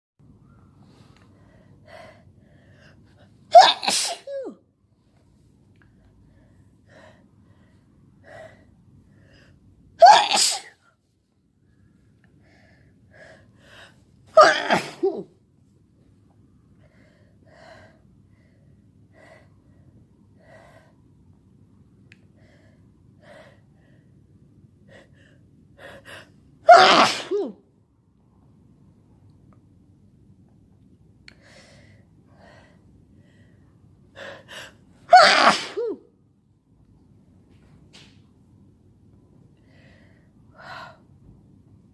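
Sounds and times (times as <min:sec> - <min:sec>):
faint gasping breaths: 0:00.9 - 0:03.4
person sneezing: 0:03.5 - 0:04.6, 0:10.0 - 0:10.8, 0:14.3 - 0:15.3, 0:26.7 - 0:27.6, 0:35.1 - 0:36.0.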